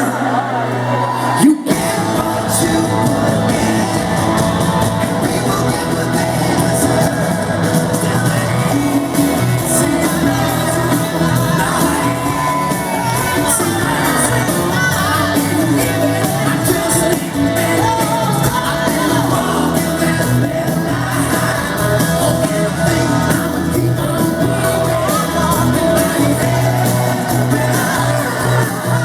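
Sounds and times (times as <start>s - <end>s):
people shouting: 0.0s - 20.0s
live rock band playing: 0.0s - 29.0s
wordless singing: 0.0s - 29.0s.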